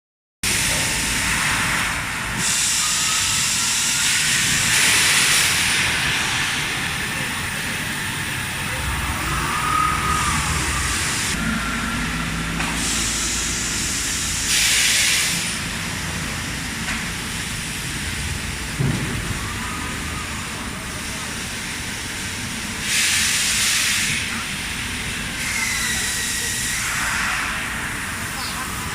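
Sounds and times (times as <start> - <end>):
machine running: 0.4 - 23.0
hissing air blasts: 0.5 - 22.2, 22.8 - 28.9.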